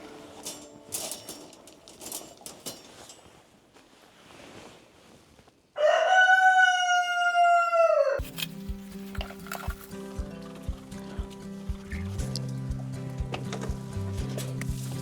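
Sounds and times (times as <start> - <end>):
clicks and rustles: 0.0 - 5.6, 8.2 - 15.0
rooster crowing: 5.8 - 8.2.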